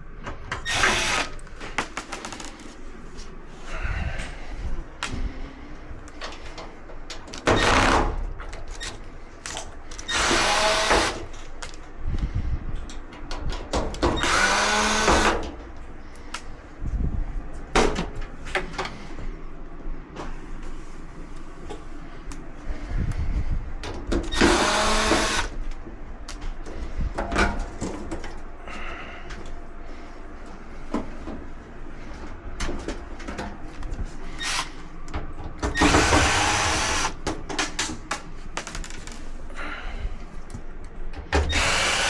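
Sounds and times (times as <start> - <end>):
power drill backing out screws: 0.6 - 1.4, 9.9 - 11.4, 14.2 - 15.4, 24.3 - 25.5, 35.6 - 37.2, 41.4 - 42.0.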